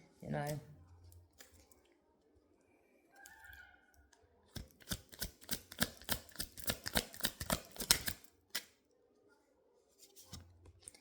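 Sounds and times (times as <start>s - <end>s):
cards being shuffled: 4.6s - 8.7s.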